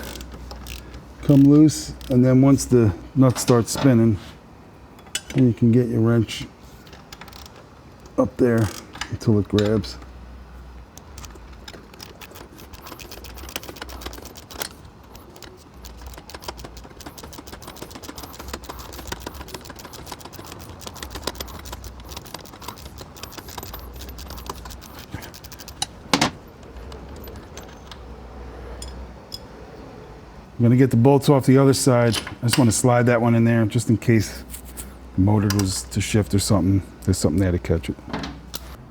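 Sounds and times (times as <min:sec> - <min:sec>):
wrench clicking on metal: 0:00.0 - 0:02.4, 0:06.9 - 0:10.1, 0:10.9 - 0:26.0.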